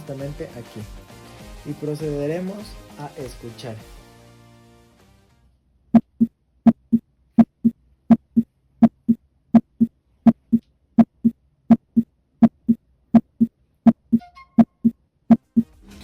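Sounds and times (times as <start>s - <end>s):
heartbeat thuds: 6.0s - 15.8s.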